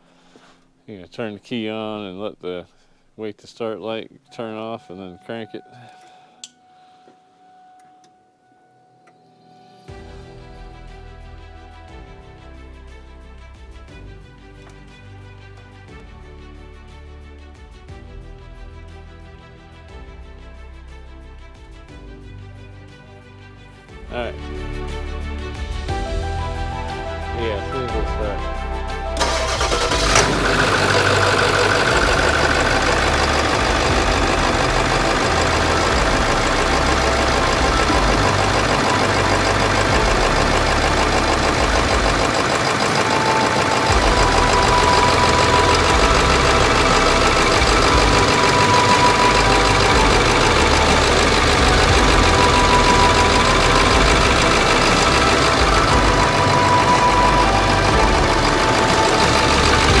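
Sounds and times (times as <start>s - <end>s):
diesel engine idling: 26.0s - 60.0s.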